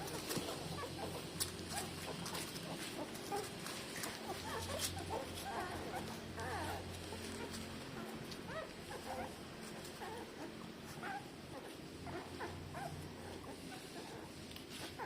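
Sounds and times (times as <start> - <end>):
low steady hum: 0.0 - 15.0
puppies whimpering and squeaking: 0.0 - 15.0.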